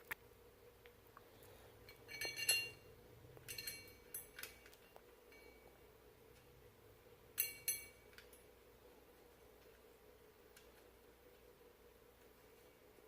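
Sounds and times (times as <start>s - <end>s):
metal parts clinking: 1.9s - 5.6s, 7.4s - 8.5s.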